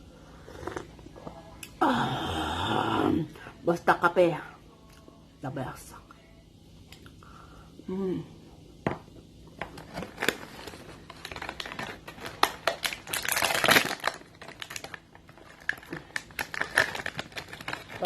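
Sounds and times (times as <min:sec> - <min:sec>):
plastic wrapper crinkling: 0:09.6 - 0:18.0.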